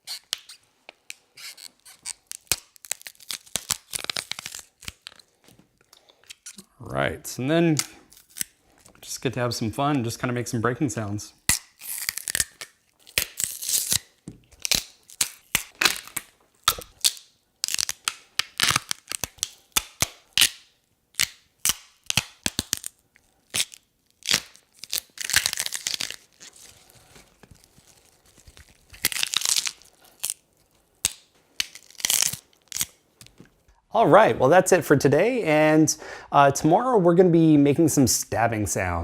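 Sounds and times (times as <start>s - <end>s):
celery snapping and tearing: 1.5s - 5.2s, 7.8s - 8.5s, 11.5s - 20.6s, 21.2s - 33.4s.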